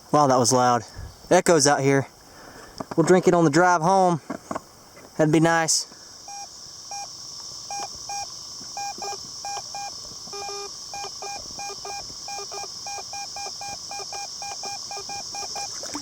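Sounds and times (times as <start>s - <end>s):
steady high hiss: 0.0s - 16.0s
metal detector beeps: 6.3s - 7.1s, 7.7s - 15.8s.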